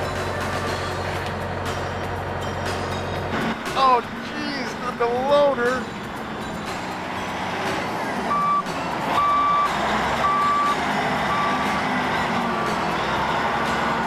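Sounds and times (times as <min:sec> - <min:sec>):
diesel engine running: 0:00.0 - 0:14.0
back-up alarm beeping: 0:08.3 - 0:11.7.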